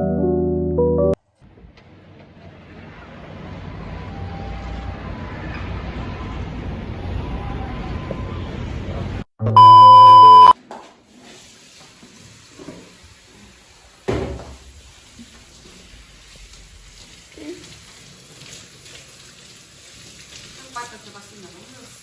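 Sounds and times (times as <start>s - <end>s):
loud electronic beep: 9.4s - 10.5s
steady rumbling noise: 14.6s - 17.4s.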